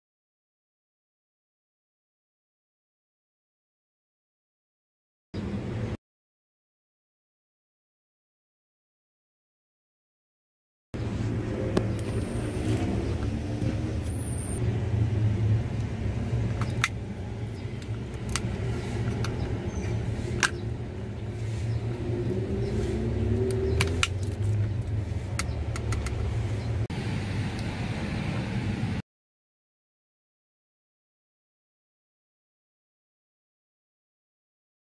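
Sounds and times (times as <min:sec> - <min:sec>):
sharp clicks and knocks: 0:23.4 - 0:26.4.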